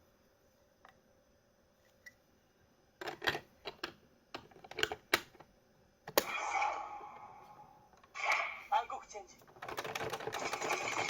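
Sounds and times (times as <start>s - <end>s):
plastic toy clicks and clacks: 9.5s - 11.0s.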